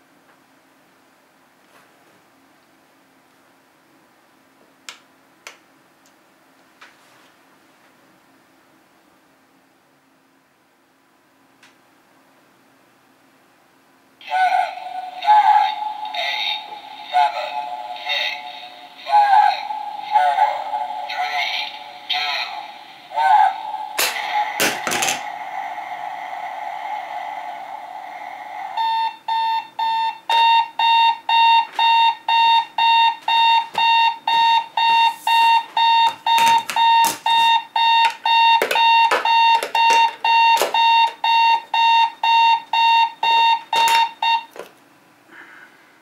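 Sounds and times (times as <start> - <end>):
steady tone with hiss: 0.0 - 29.8
alarm clock beeping: 23.5 - 44.5.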